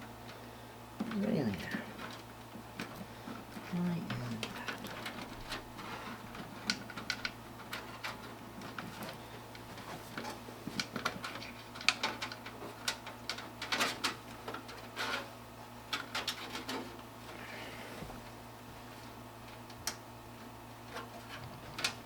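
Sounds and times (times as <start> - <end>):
faint low hum: 0.0 - 22.0
plastic parts clicking and rattling: 4.3 - 15.3, 15.9 - 17.1, 20.8 - 22.0.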